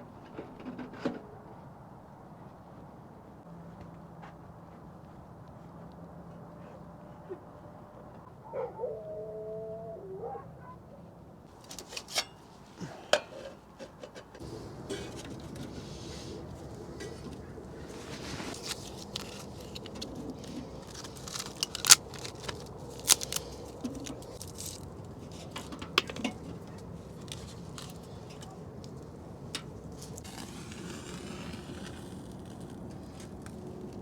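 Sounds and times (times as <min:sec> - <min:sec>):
faint steady background noise: 0:00.0 - 0:34.0
objects being handled: 0:11.5 - 0:30.4.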